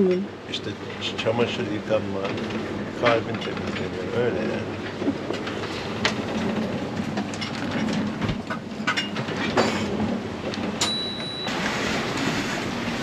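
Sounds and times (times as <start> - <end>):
rushing water against hull: 9.8 - 13.0.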